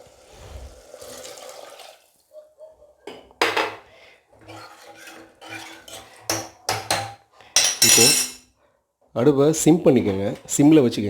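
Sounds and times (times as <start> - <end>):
metal utensils clattering against pot: 4.4 - 8.4.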